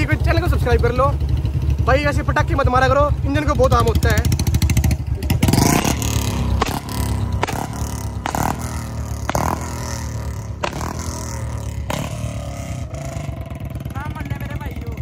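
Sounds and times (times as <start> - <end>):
motorcycle engine running: 0.0 - 15.0
exhaust backfire pops: 5.5 - 13.2.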